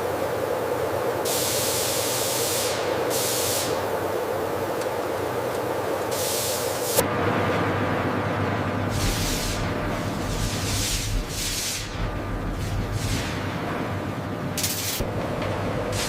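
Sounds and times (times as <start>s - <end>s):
machinery hum: 0.0s - 16.0s
hissing spray or air: 1.2s - 3.8s, 6.1s - 7.0s, 8.9s - 12.0s, 12.6s - 13.5s, 14.6s - 15.1s.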